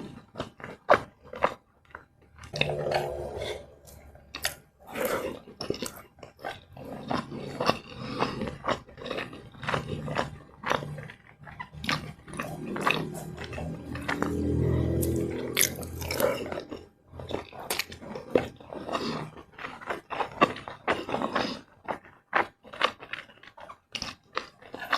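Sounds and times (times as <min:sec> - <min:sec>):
chewing and crunching food: 0:00.0 - 0:24.9
low drawn-out sound: 0:02.6 - 0:04.6, 0:12.4 - 0:16.4.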